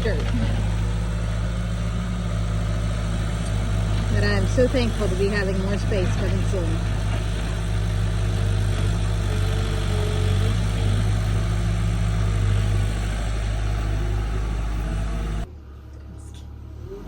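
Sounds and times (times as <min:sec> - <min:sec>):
excavator engine running: 0:00.0 - 0:17.0.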